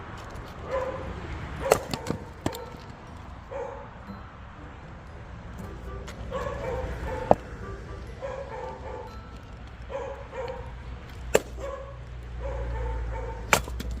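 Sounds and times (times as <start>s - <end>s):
axe splitting firewood: 1.6s - 3.0s, 10.6s - 11.8s, 13.3s - 14.0s.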